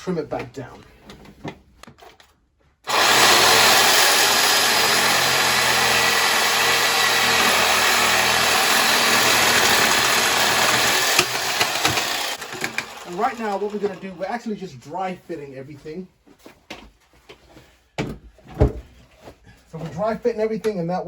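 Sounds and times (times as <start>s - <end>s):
power saw cutting plastic pipe: 2.9s - 14.5s.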